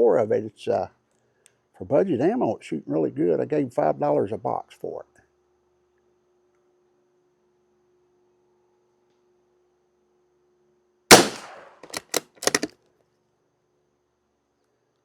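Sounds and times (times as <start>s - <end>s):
rifle bolt clicks: 11.1s - 12.7s
rifle shot: 11.1s - 12.7s.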